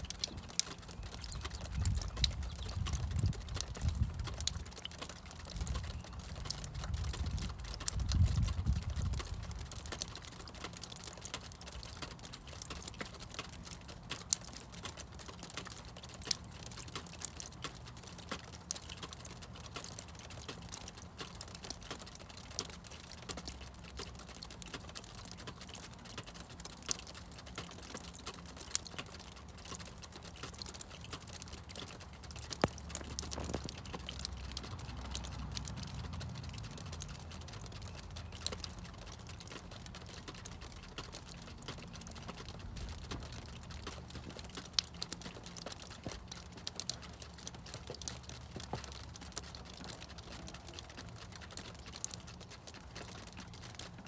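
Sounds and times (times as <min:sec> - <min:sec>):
water dripping and splashing: 0:00.0 - 0:54.0.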